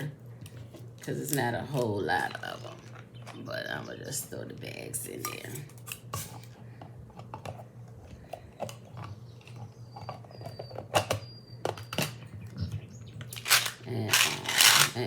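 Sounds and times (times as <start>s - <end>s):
charms clicking: 13.2s - 15.0s
plastic bags rustling: 13.3s - 15.0s.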